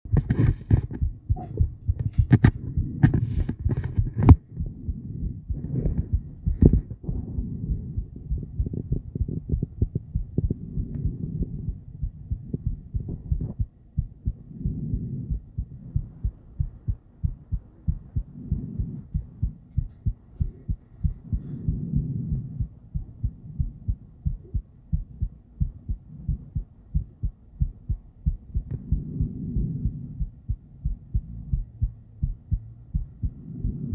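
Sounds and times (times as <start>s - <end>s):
doppler heartbeat pulses: 0.0s - 33.9s
sharp clicks and knocks: 0.1s - 4.4s.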